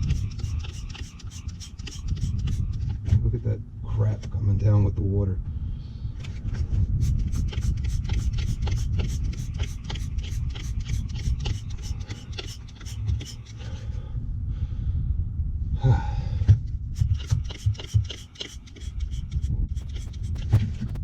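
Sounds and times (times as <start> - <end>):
brush hissing strokes on coil: 0.0 - 2.8, 7.0 - 13.5, 17.0 - 21.0
steady low rumble: 0.0 - 21.0.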